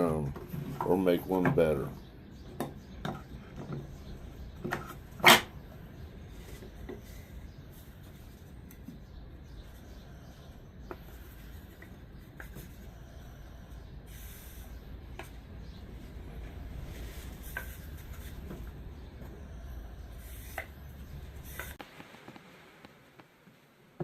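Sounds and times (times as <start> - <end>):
faint scratching and rubbing: 15.8 - 22.5.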